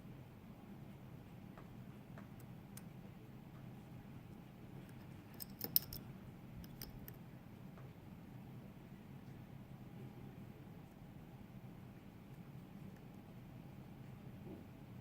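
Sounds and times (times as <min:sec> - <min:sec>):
lock pick clicking and scraping: 0:04.9 - 0:06.0, 0:06.6 - 0:07.2.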